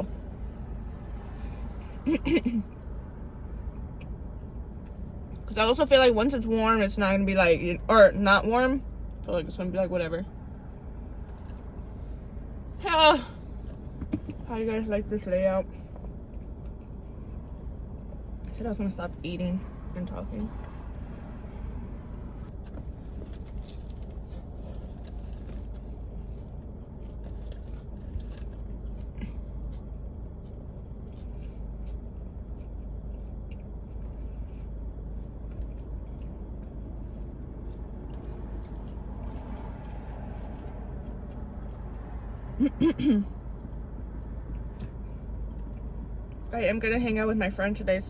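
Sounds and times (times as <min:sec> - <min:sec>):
low rumble of car and traffic: 0:00.0 - 0:48.0
person chewing: 0:15.8 - 0:18.5, 0:22.5 - 0:42.3.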